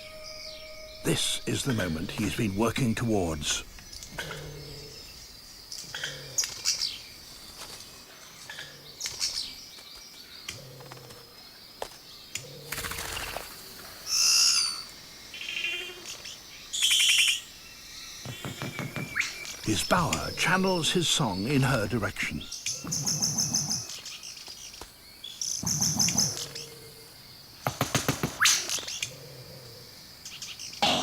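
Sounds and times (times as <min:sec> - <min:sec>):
bird singing courtship song: 0:14.1 - 0:26.9.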